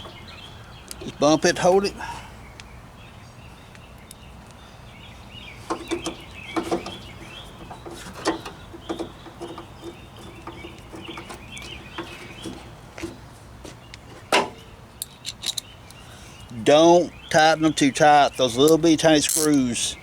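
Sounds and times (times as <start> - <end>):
hand tool clicking on metal screws: 15.0 - 15.7, 18.7 - 19.6.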